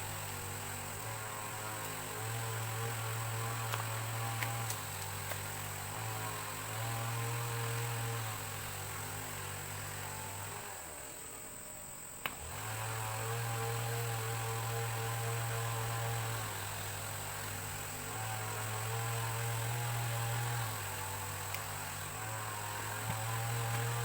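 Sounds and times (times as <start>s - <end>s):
low mechanical hum: 0.0s - 24.0s.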